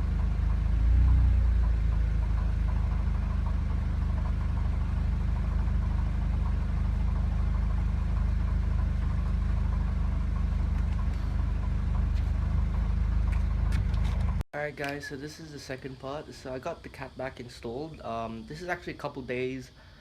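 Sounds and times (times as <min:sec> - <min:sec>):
car engine idling: 0:00.0 - 0:14.4.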